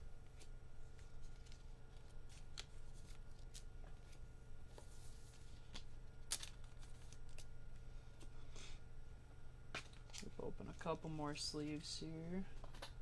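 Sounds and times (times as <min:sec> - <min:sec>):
low steady hum: 0:00.0 - 0:13.0
cards and packaging rustling: 0:00.3 - 0:07.5.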